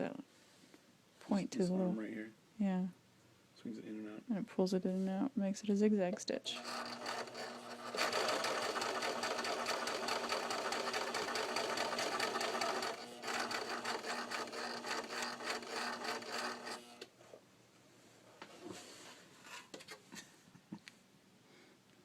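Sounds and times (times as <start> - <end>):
sewing machine motor hum: 6.5 - 17.1
sewing needle mechanism clatter: 6.6 - 16.8.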